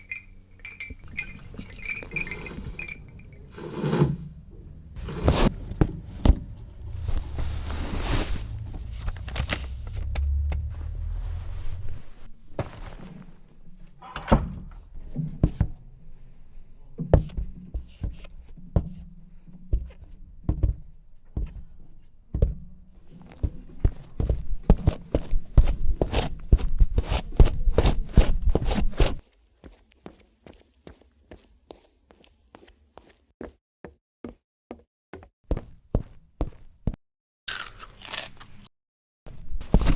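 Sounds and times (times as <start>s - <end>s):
low rumble: 4.2s - 12.3s
thunks and knocks: 14.0s - 16.0s, 22.4s - 25.8s.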